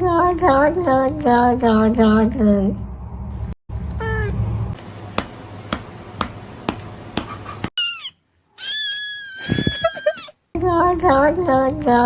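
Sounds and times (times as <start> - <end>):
cat meowing: 4.0 - 4.4, 7.8 - 9.4.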